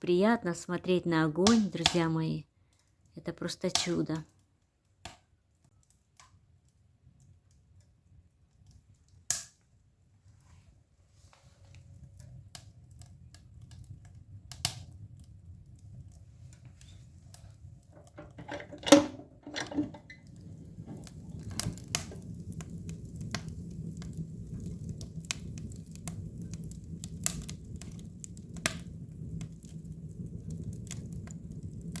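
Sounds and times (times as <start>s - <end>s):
wood fire crackling in a stove: 0.1s - 32.0s.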